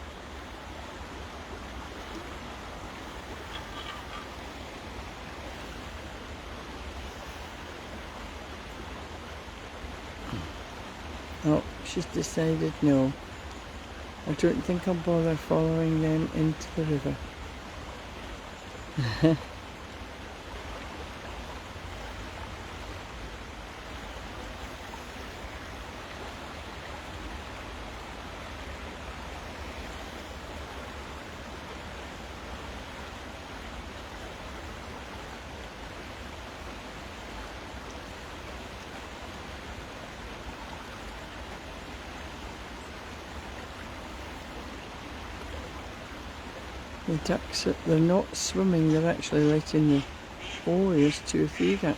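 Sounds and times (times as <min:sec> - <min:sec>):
flowing water: 0:00.0 - 0:51.9
rain falling on a river: 0:00.0 - 0:51.9.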